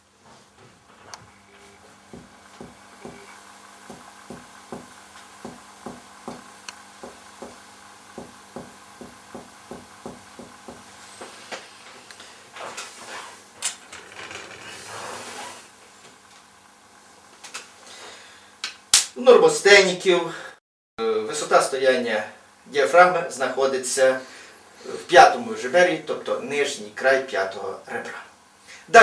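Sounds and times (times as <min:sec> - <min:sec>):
rustling: 0:12.0 - 0:15.8
sharp click: 0:18.6 - 0:19.2.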